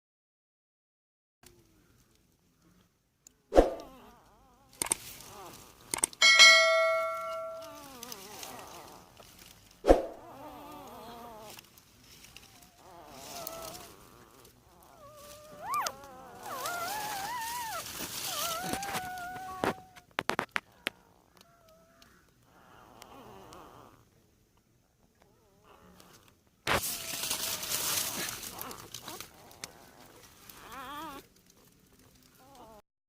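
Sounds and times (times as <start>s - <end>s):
loud ringing ding: 6.2s - 7.8s
puppies whimpering and squeaking: 6.2s - 8.9s, 12.6s - 20.0s, 26.8s - 31.2s.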